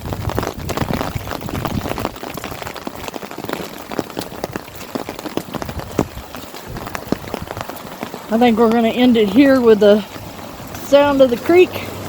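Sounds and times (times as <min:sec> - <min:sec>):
close raindrop hits: 0:00.0 - 0:12.0
hiss of falling rain: 0:00.0 - 0:12.0.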